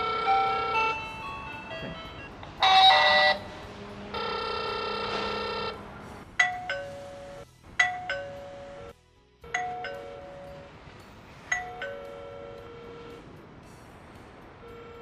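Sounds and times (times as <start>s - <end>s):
doorbell ding-dong chime: 6.4s - 8.7s, 9.5s - 10.7s, 11.5s - 12.9s.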